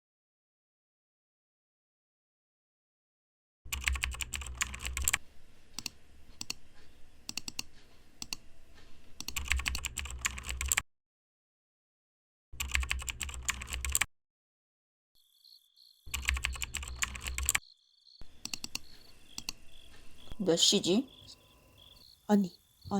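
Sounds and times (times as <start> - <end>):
fast typing on keyboard: 3.7 - 5.2, 5.8 - 6.7, 7.3 - 8.4, 9.2 - 10.8, 12.6 - 14.1, 16.1 - 17.6, 18.3 - 19.6
faint steady high tone: 18.4 - 22.9.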